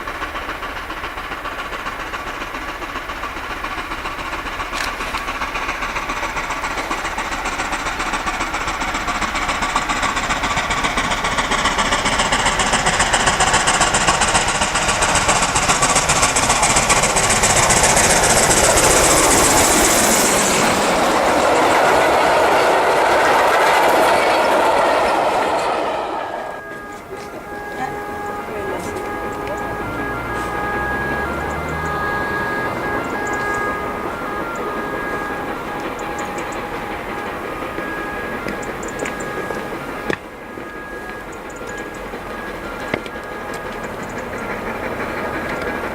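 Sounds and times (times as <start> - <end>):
carriages rolling over rails: 0.0 - 45.9
high steam hiss: 0.0 - 45.9
steam locomotive exhaust beats: 0.0 - 45.9.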